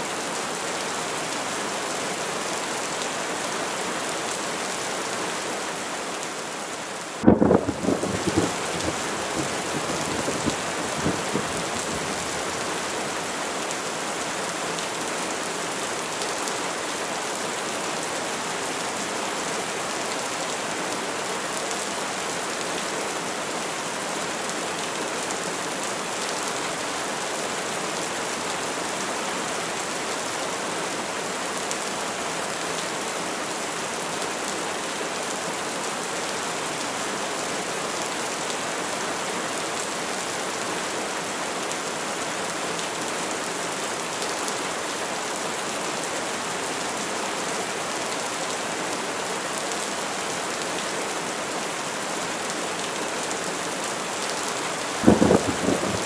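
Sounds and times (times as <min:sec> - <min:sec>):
steady rain: 0:00.0 - 0:56.0
thunder rumble: 0:07.2 - 0:13.1, 0:55.0 - 0:56.0.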